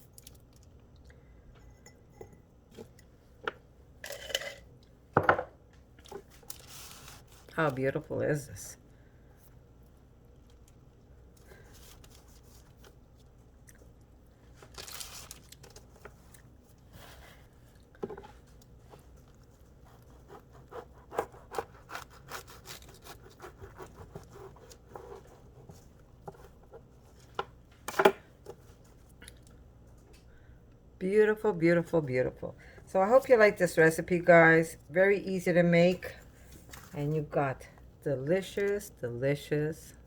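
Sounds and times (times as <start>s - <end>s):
sandwich preparation handling sounds: 5.9s - 7.6s, 10.3s - 29.2s.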